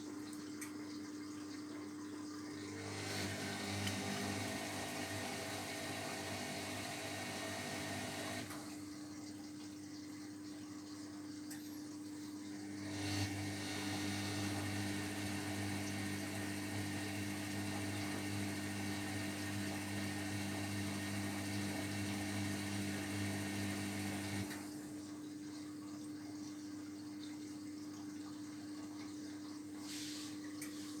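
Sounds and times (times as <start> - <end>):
washing machine motor humming: 2.3 - 9.3, 12.4 - 25.2.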